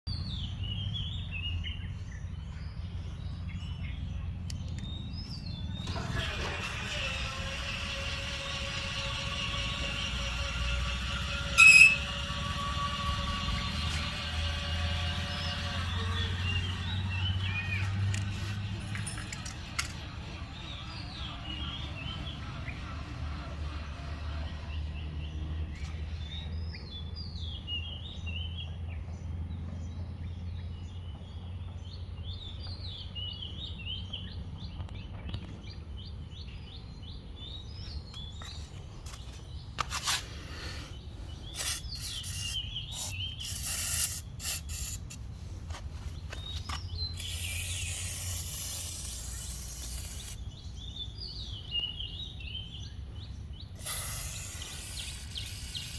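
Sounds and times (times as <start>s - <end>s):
gate motor humming: 4.5s - 26.5s
high-pitched squeaks: 5.7s - 24.6s, 41.5s - 45.2s, 46.4s - 50.5s.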